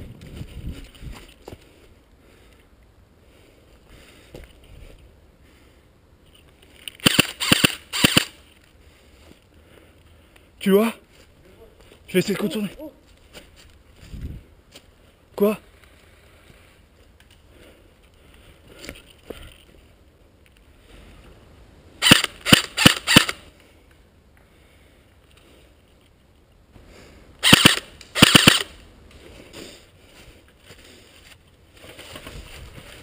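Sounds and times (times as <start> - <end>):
airsoft rifle firing: 7.0 - 8.4, 22.0 - 23.4, 27.4 - 28.8.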